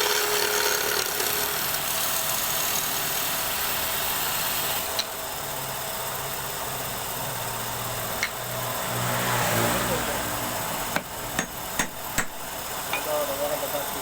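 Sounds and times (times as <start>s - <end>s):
wood lathe motor hum: 0.0s - 9.0s.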